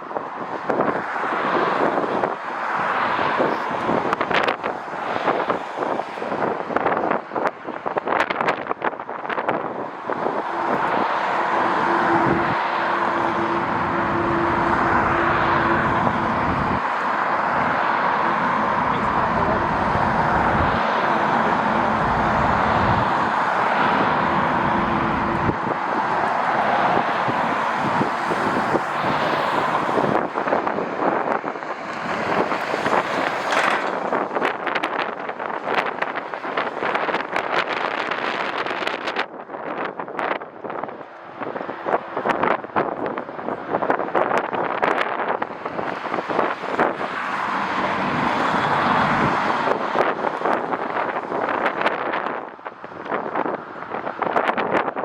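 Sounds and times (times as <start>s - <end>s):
jet engines roaring: 9.7s - 37.2s.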